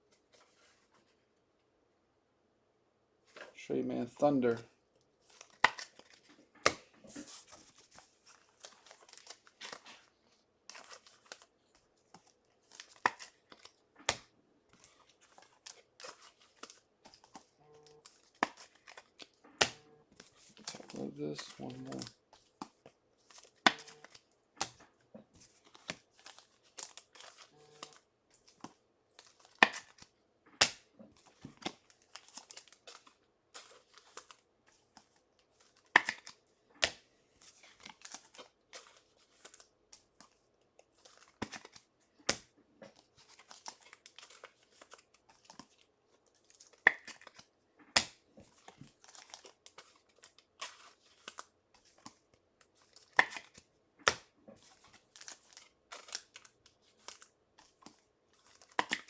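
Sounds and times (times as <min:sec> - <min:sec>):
card wrappers tearing and crinkling: 0:05.2 - 0:10.1, 0:10.7 - 0:11.6, 0:12.2 - 0:22.6, 0:23.2 - 0:24.8, 0:25.4 - 0:52.2, 0:52.8 - 0:59.0
cards sliding: 0:10.7 - 0:11.5, 0:12.2 - 0:24.8, 0:25.4 - 0:28.0.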